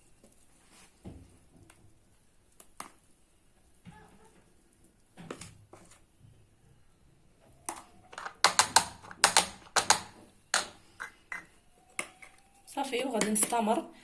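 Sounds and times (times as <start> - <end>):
spoon clicking on cake molds: 7.7 - 12.4.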